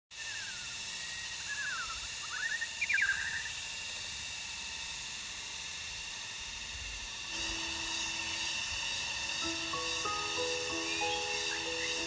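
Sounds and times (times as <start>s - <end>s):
bird song whistled phrases: 0.2s - 3.5s, 10.7s - 12.0s
steady high hiss: 0.2s - 12.0s.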